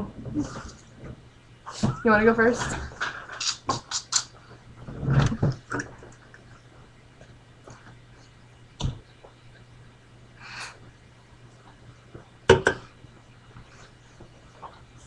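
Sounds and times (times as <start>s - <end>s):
mouth click: 3.4s - 4.3s.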